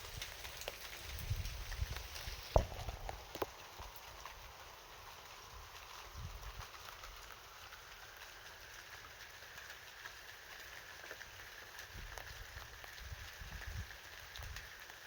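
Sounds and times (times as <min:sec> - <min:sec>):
raindrops tapping on car: 0:00.0 - 0:15.0
steady rain: 0:00.0 - 0:15.0.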